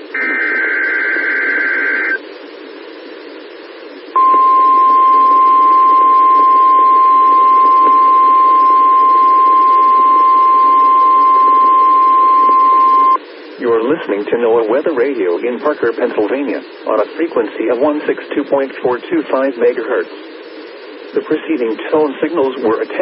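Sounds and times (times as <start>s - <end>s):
radio hiss: 0.0s - 23.0s
steady single-pitch alarm tone: 4.2s - 13.2s.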